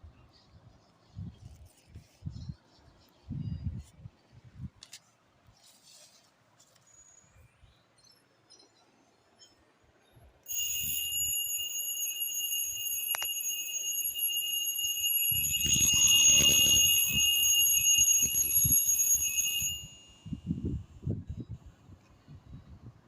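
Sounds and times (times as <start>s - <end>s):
alarm clock high-pitched tone: 10.5s - 20.6s.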